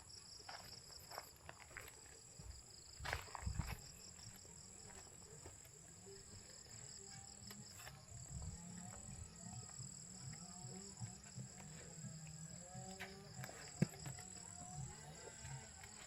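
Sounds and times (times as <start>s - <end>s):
crickets chirring: 0.0s - 16.0s
soft footstep thumps: 0.5s - 5.7s, 12.8s - 14.9s.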